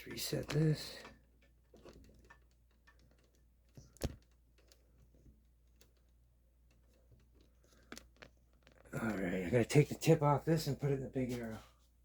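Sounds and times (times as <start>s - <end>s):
handling clicks and taps: 0.1s - 8.9s.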